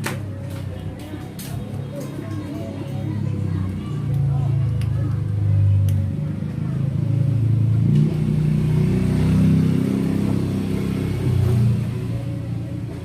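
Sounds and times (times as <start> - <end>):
motorcycle engine revving: 6.1 - 13.0.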